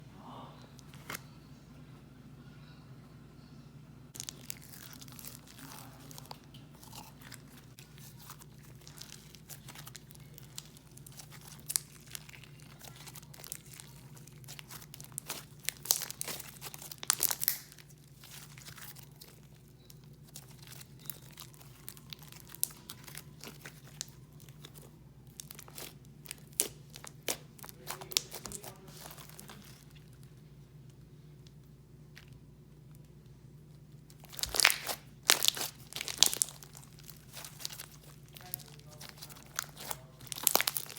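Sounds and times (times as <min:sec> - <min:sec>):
slime squished by hand crackling: 0:04.2 - 0:19.5, 0:20.2 - 0:30.0, 0:34.1 - 0:40.9.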